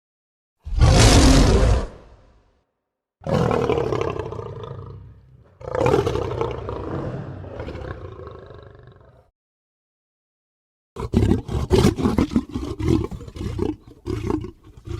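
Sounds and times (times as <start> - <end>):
lion roaring: 0.7 - 2.3, 3.2 - 9.3.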